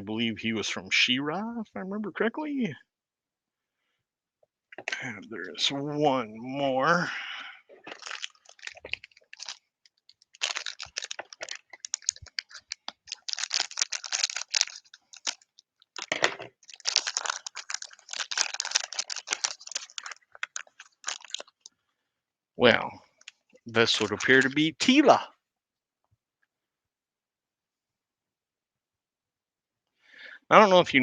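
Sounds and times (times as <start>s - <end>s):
plastic wrapper crinkling and tearing: 7.8s - 21.7s, 23.2s - 24.6s.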